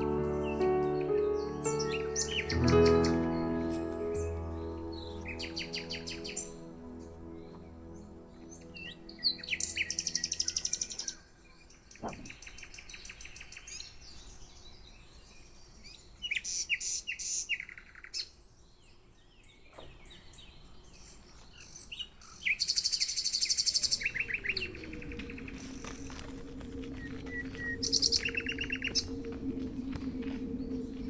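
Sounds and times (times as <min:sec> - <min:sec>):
small birds chirping: 0:00.0 - 0:31.0.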